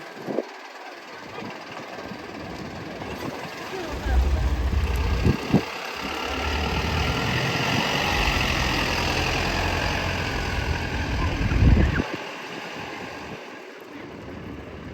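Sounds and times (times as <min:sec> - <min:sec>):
fire truck engine running: 0:01.7 - 0:12.0.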